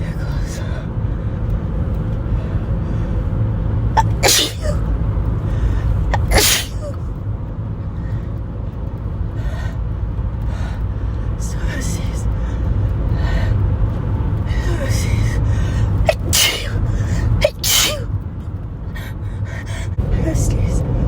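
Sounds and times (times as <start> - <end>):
car rumble: 0.0 - 21.0
person sneezing: 4.0 - 4.8, 6.1 - 7.0, 16.1 - 18.1.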